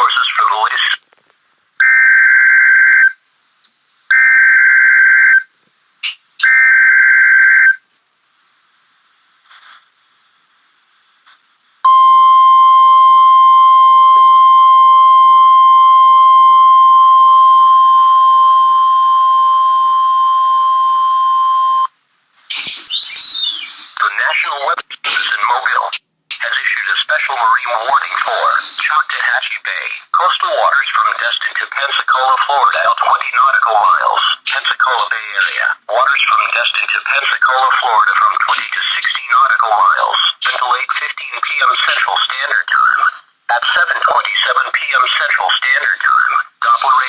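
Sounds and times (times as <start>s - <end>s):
buzzy digital data bursts: 27.0s - 30.1s.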